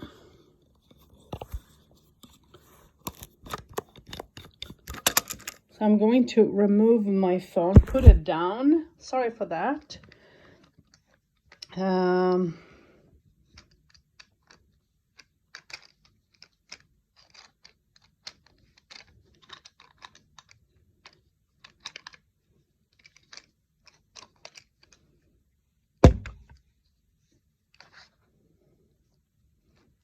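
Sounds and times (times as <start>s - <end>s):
small parts clicking and tapping: 0.8s - 5.6s, 13.5s - 22.3s, 22.9s - 25.1s
loud knock: 26.0s - 26.4s.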